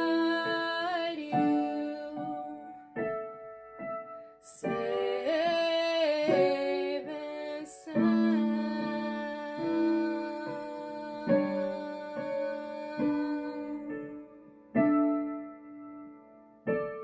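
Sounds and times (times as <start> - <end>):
slow piano chords: 0.0 - 17.0.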